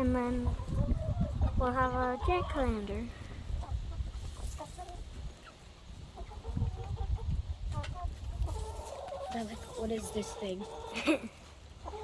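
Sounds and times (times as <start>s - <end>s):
chickens clucking: 0.0s - 12.0s.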